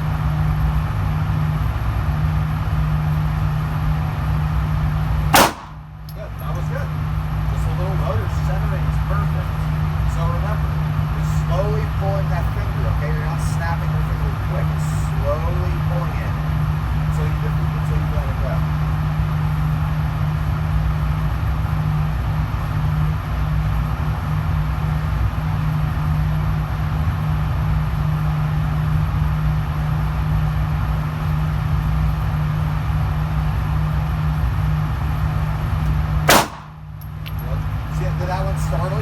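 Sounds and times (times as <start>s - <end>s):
steady low hum: 0.0s - 39.0s
pistol shot: 5.4s - 6.1s, 36.3s - 36.9s.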